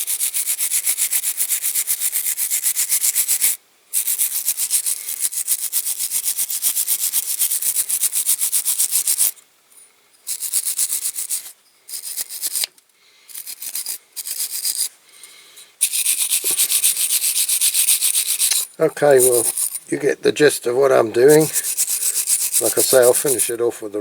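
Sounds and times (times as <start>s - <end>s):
wire brush scrubbing metal: 13.3s - 14.9s, 15.8s - 23.8s.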